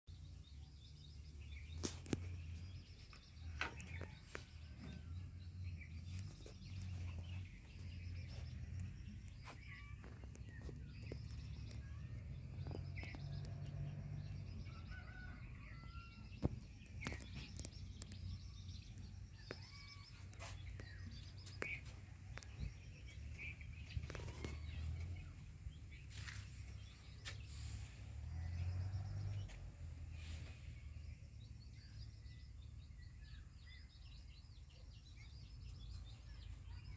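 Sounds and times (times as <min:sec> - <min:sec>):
birds chirping: 0:00.1 - 0:36.9.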